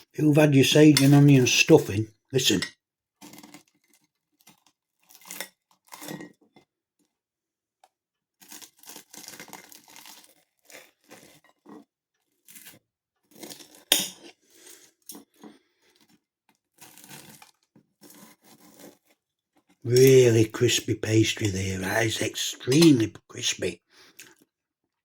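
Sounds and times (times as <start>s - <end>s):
pastry crunching while chewing: 3.2s - 6.2s, 8.4s - 13.9s, 15.2s - 22.0s.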